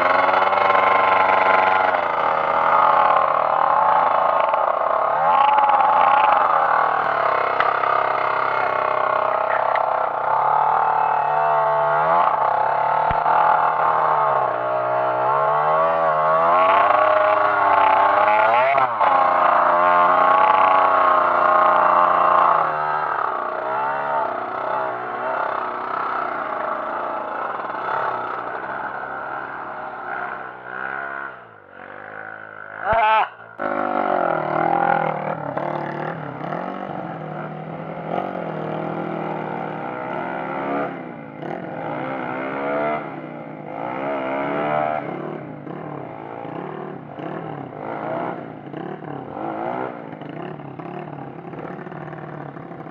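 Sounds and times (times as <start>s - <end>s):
dirt bike engine revving: 0.0s - 52.9s.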